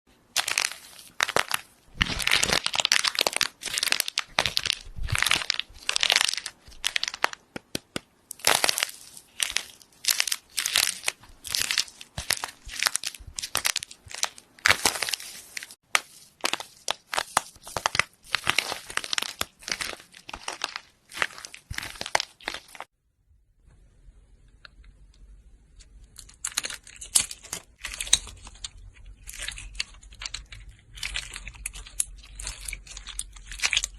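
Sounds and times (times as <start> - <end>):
metal material crunching and crackling: 0.4 - 7.4, 25.8 - 33.9.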